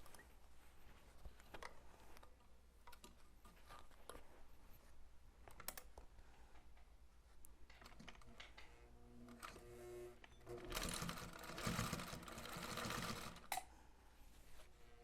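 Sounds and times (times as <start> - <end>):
faint clicks and handling: 0.0 - 8.8.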